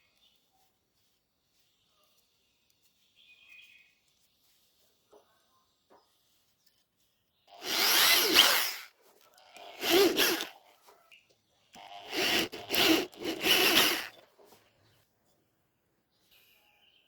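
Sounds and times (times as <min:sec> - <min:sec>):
tool scraping and grinding: 0:07.6 - 0:10.6, 0:11.8 - 0:14.6.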